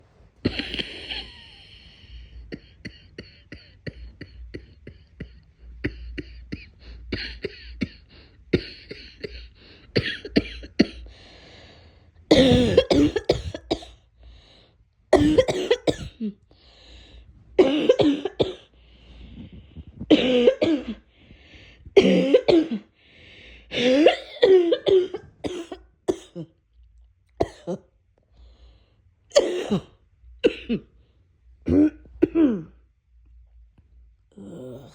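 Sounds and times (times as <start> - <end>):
person coughing: 0.4 - 1.7, 2.4 - 11.1, 12.3 - 14.0, 15.1 - 16.4, 17.6 - 18.7, 20.0 - 21.1, 22.0 - 22.9, 23.7 - 26.6, 27.4 - 27.9, 29.3 - 30.9, 31.7 - 32.8, 34.4 - 34.9.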